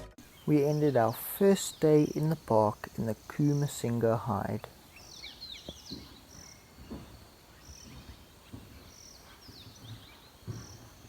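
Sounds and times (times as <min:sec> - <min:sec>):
soft low thumps: 0:05.6 - 0:11.0.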